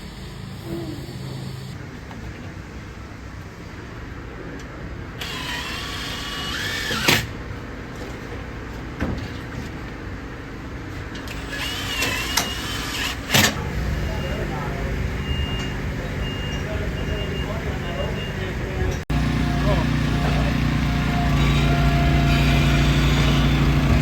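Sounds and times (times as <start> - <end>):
small motor whining: 0.0 - 1.8, 5.2 - 7.3, 11.3 - 13.4, 19.1 - 24.0
vehicle engine rumble: 13.5 - 24.0.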